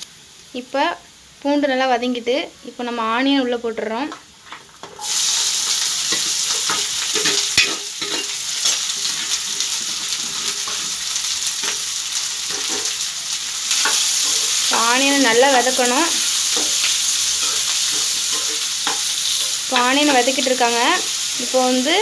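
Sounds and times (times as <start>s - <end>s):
onions sizzling in hot oil: 0.0s - 22.0s
spatula scraping pan: 13.7s - 20.6s.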